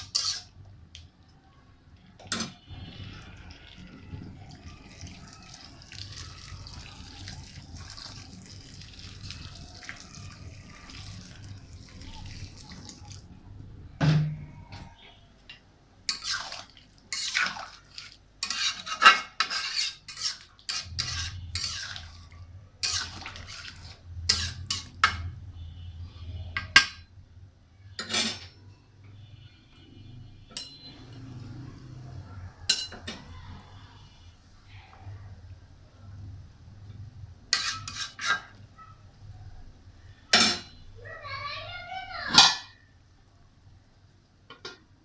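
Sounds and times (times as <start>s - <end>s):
metal utensils and pots clattering: 0.0s - 0.7s, 2.2s - 13.3s, 14.0s - 25.4s, 26.5s - 27.1s, 28.0s - 28.6s, 30.5s - 33.8s, 37.5s - 38.8s, 40.3s - 40.9s, 42.3s - 42.9s, 44.5s - 45.0s.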